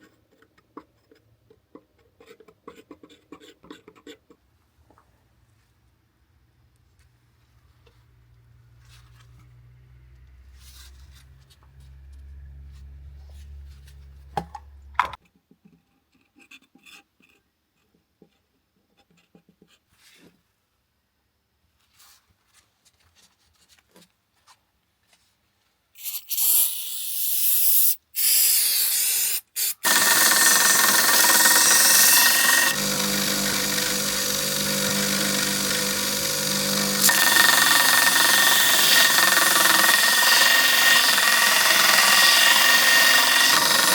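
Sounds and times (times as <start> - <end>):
power tool whining: 29.6 - 43.9.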